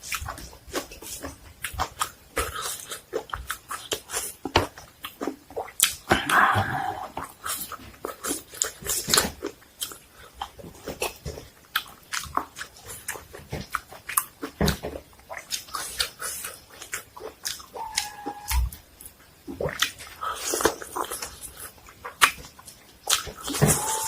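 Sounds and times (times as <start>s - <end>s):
crunching and chewing: 0.0s - 24.0s
hum-like tone: 17.8s - 18.8s.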